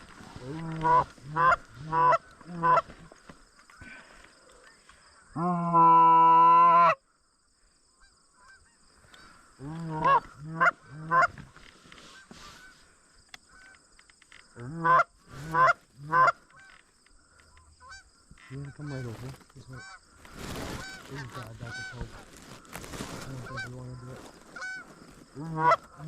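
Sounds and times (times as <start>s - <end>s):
goose call honks: 0.3s - 3.1s, 5.4s - 7.0s, 9.6s - 11.4s, 14.6s - 16.8s, 17.8s - 22.3s, 23.0s - 26.0s.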